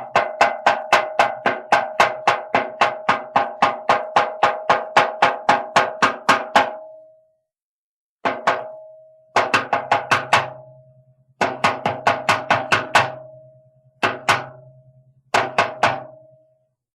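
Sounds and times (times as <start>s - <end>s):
cartoon door knocking: 0.0s - 6.8s, 8.2s - 10.6s, 11.4s - 13.3s, 14.0s - 14.6s, 15.3s - 16.2s.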